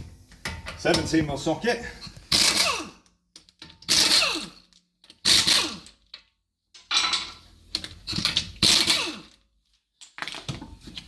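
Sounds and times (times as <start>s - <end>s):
power tool undoing wheel bolts: 2.3s - 3.0s, 3.6s - 6.0s, 7.7s - 9.4s.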